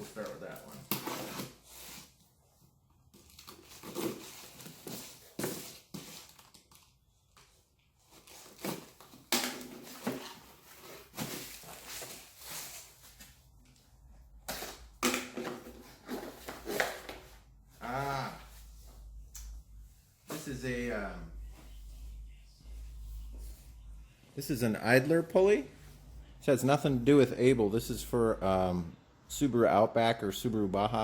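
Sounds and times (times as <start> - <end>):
cardboard and tape tearing: 0.0 - 2.1, 3.2 - 6.8.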